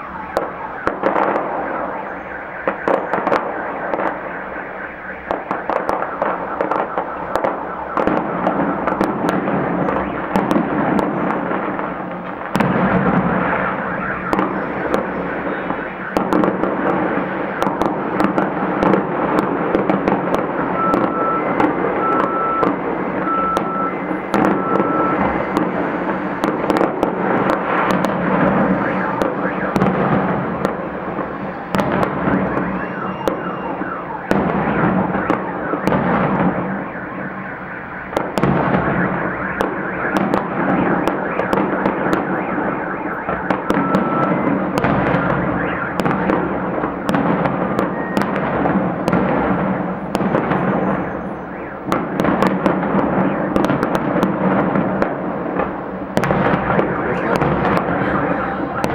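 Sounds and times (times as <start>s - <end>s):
fireworks bangs and crackles: 0.0s - 58.9s
fireworks rumble: 0.0s - 58.9s
high electronic beeps: 20.8s - 25.5s, 32.6s - 33.8s, 57.0s - 58.9s.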